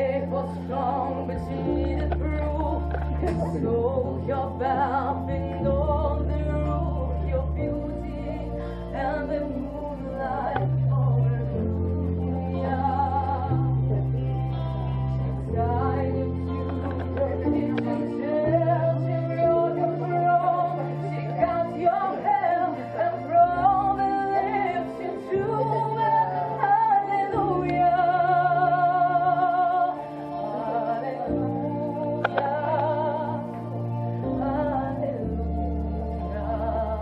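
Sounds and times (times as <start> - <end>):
sustained low chords: 0.0 - 24.5.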